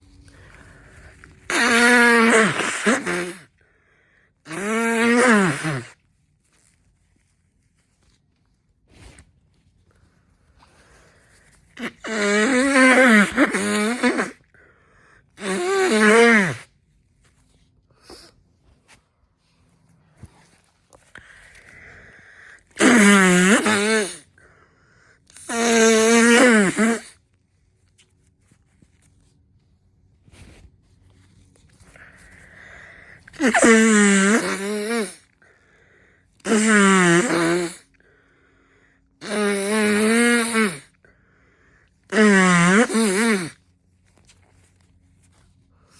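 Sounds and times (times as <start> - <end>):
person sneezing: 1.4 - 3.5, 4.5 - 6.0, 21.2 - 24.3, 32.1 - 35.3, 36.4 - 37.9, 39.2 - 41.0, 42.1 - 43.6.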